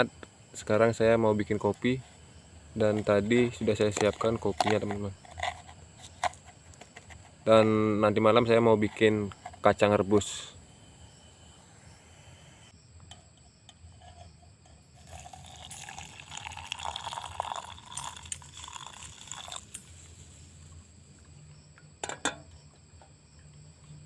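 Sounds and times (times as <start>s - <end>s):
hot water pouring into cup: 15.0s - 19.9s.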